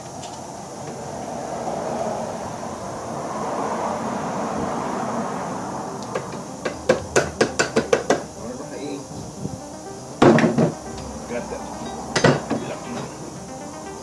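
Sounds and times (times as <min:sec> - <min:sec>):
steady rushing noise: 0:00.0 - 0:14.0
sharp metal taps: 0:06.0 - 0:08.3, 0:12.1 - 0:13.1.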